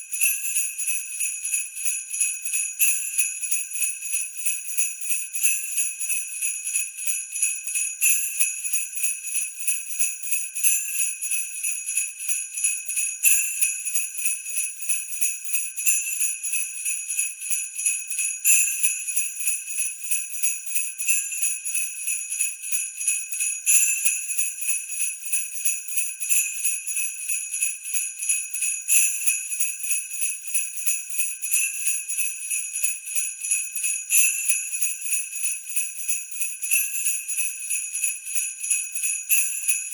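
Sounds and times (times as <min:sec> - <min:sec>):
sleigh bells jingling: 0:17.1 - 0:39.9.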